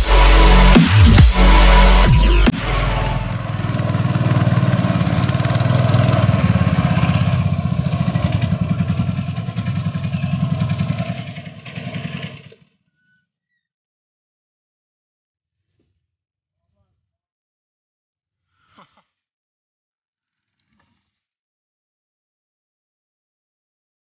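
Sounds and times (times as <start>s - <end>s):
small engine pulsing: 0.0s - 12.6s.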